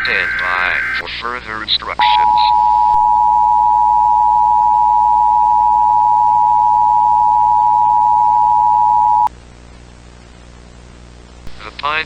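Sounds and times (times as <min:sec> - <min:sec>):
two-tone alarm signal: 0:00.0 - 0:01.0, 0:02.0 - 0:09.3
low broadcast hiss and hum: 0:00.0 - 0:12.0.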